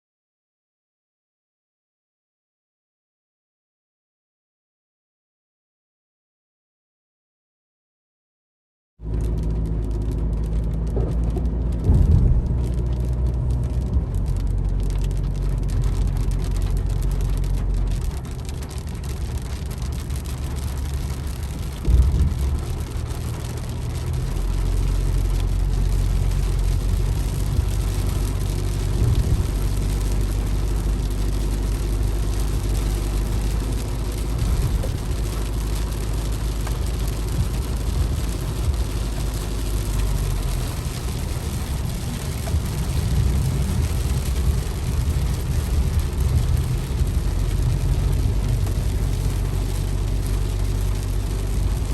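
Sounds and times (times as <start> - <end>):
car engine droning: 9.0 - 51.9
car jolts: 10.7 - 51.9.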